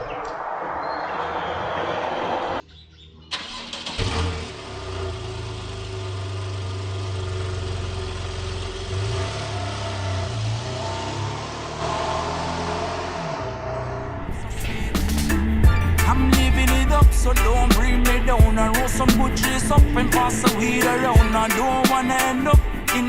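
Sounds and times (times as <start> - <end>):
car engine starting and idling: 3.2 - 22.9
steady noise: 14.2 - 23.0.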